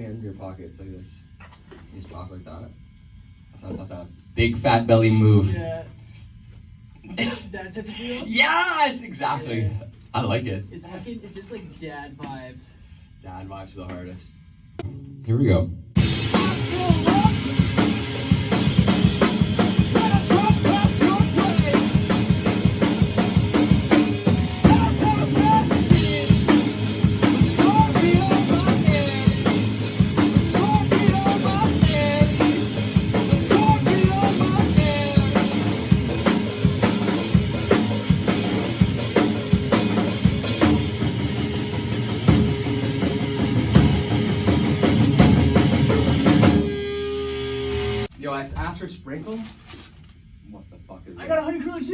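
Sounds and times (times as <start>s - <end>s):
rock music: 15.9s - 48.1s
drum kit beat: 16.0s - 48.1s.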